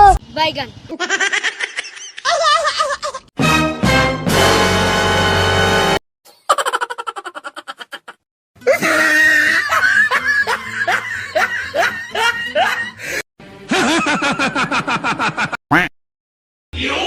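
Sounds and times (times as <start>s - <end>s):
fast pulsing laugh: 0.9s - 3.3s, 6.4s - 13.0s
snickering laugh: 0.9s - 3.3s, 6.4s - 13.0s, 13.7s - 15.6s
music: 3.4s - 6.0s, 10.0s - 14.4s.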